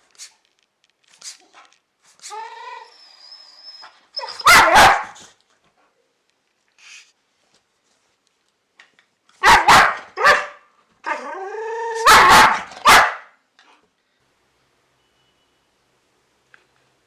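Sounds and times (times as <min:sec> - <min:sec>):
dog whining: 0:02.3 - 0:05.1
dog barking: 0:04.2 - 0:05.2, 0:09.4 - 0:10.7, 0:12.0 - 0:13.4.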